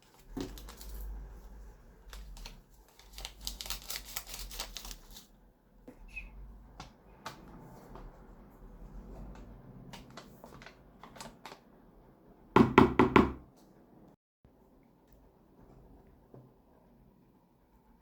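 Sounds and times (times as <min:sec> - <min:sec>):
loud knocks: 0:12.6 - 0:13.4.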